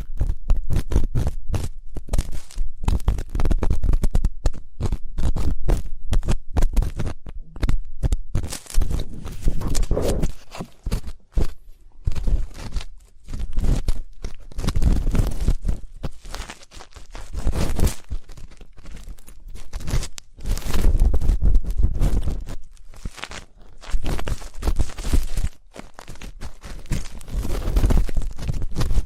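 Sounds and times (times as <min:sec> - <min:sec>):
ear pick scraping microphone: 0:06.7 - 0:15.8.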